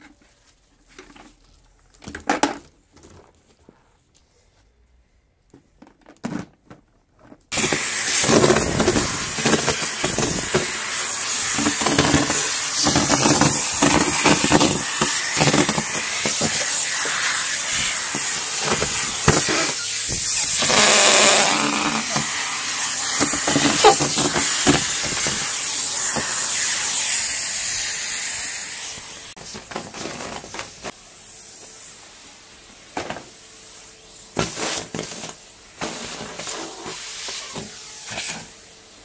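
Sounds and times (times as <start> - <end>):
dry leaves rattling in hose: 7.5 - 19.8
vacuum cleaner running: 7.5 - 39.0.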